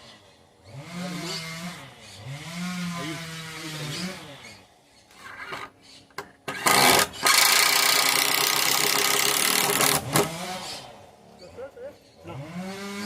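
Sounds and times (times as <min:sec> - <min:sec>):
power tool running: 0:00.0 - 0:04.7, 0:06.5 - 0:11.2, 0:12.3 - 0:13.0.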